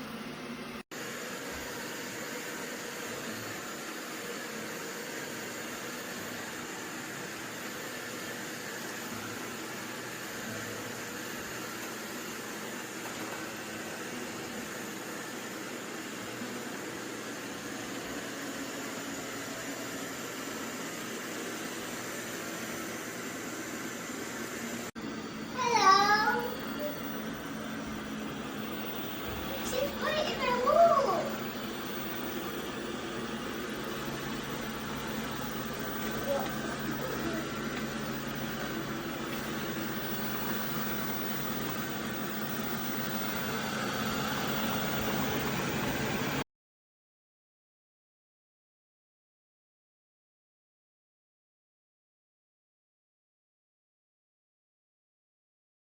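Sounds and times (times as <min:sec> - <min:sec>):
robot vacuum whirring: 0:01.0 - 0:46.4.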